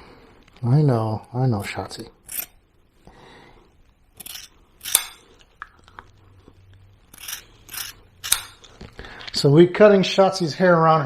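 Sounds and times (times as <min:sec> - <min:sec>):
scissors snipping hair: 0:04.2 - 0:05.2, 0:07.1 - 0:08.7.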